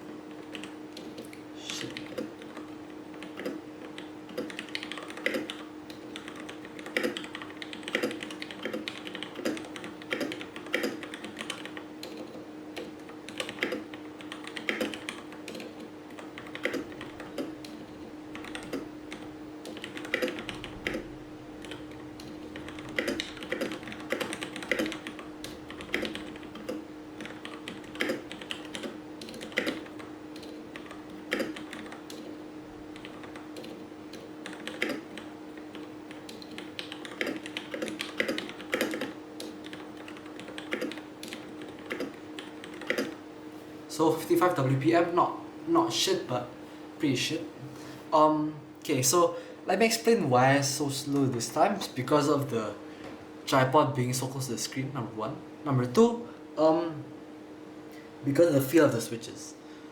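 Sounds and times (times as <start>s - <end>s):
steady low hum: 0.0s - 59.9s
fast typing on mechanical keyboard: 0.5s - 43.2s.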